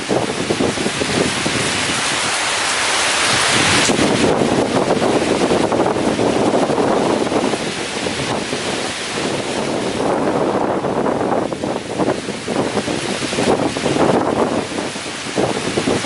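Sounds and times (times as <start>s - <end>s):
heavy rain lashing trees: 0.0s - 16.0s
strong wind gusting: 0.0s - 16.0s.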